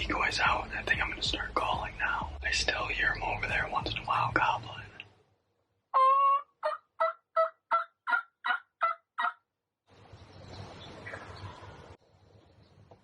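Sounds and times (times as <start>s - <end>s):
turkey call yelps: 5.9s - 9.4s.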